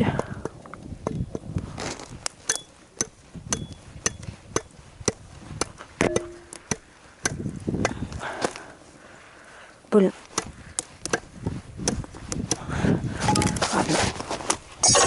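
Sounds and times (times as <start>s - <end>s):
axe knocking into wood: 6.0s - 7.4s.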